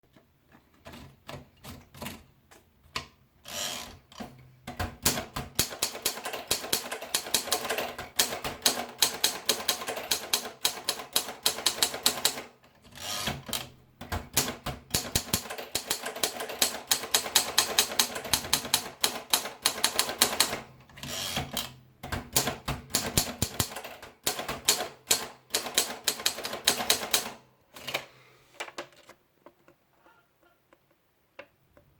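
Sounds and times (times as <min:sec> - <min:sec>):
typewriter key strikes: 0:04.7 - 0:12.4, 0:13.2 - 0:20.6, 0:21.3 - 0:27.4.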